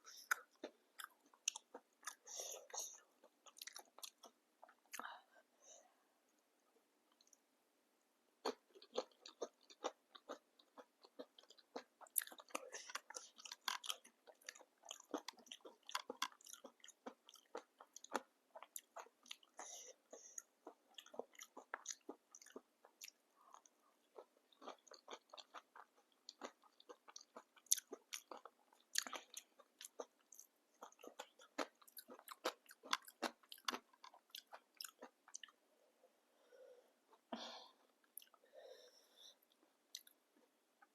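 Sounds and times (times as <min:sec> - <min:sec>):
crunching and chewing: 0:00.1 - 0:05.0, 0:08.4 - 0:35.6.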